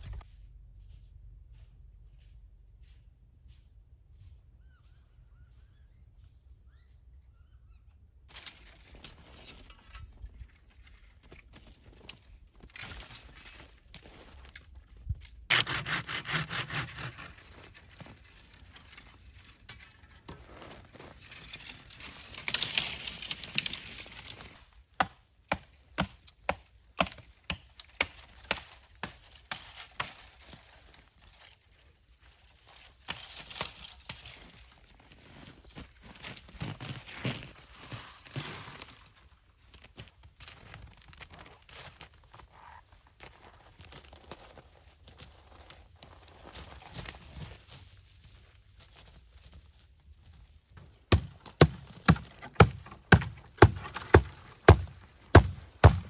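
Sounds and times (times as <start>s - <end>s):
footsteps crunching on snow: 0.0s - 5.8s, 10.5s - 14.9s, 28.7s - 50.5s
icy snow crust crunching: 28.6s - 39.2s.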